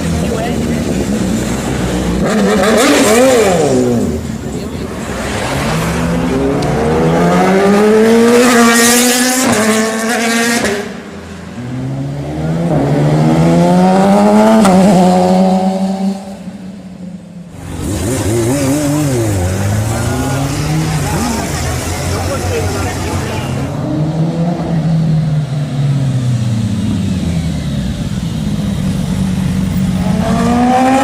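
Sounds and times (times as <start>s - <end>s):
motorcycles accelerating hard: 0.0s - 11.0s, 17.6s - 31.0s
motorcycle engine revving: 17.6s - 31.0s.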